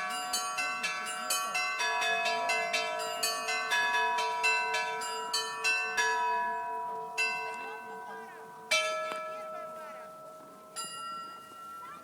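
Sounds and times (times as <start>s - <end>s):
large bell humming: 0.0s - 12.0s
small church bells struck quickly: 0.0s - 12.0s.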